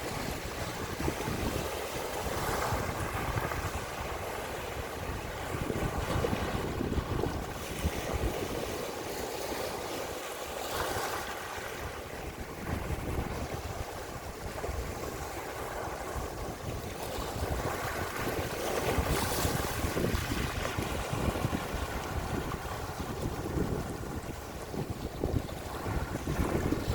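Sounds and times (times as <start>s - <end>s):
sea waves washing in: 0.0s - 26.9s
wind gusting across microphone: 0.0s - 26.9s.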